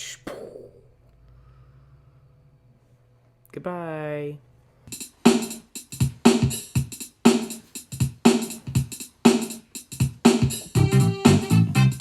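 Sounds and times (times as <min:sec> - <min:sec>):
electronic drum beat: 0:04.9 - 0:12.0
bass line: 0:10.7 - 0:12.0.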